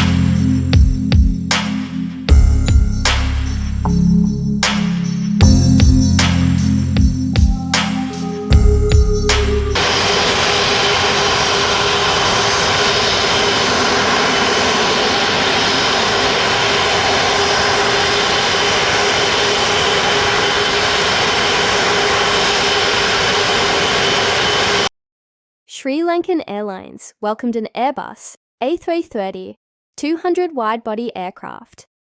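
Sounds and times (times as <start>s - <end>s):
jet engines whining: 0.0s - 24.9s.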